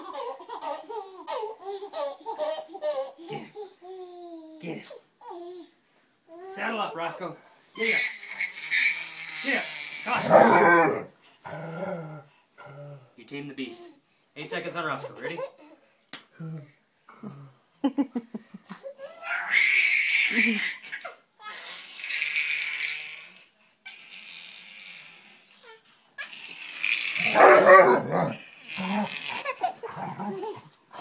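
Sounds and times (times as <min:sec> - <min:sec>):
dog vocalising: 0:10.1 - 0:11.2, 0:27.2 - 0:30.6.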